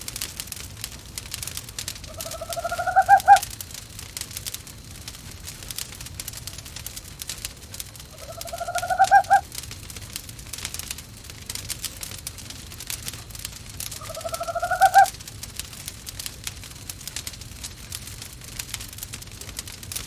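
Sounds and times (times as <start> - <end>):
fireplace crackle: 0.0 - 20.0
owl trilling call: 2.1 - 3.5, 8.1 - 9.5, 13.9 - 15.2.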